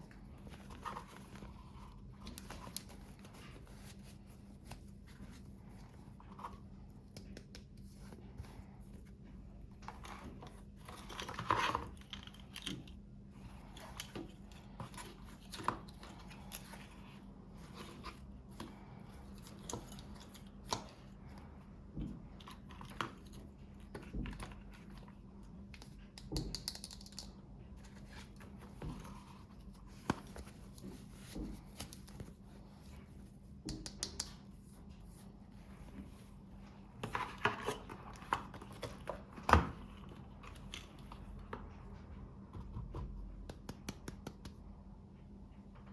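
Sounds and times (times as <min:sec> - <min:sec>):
toy packaging clicks and taps: 0:25.8 - 0:27.3.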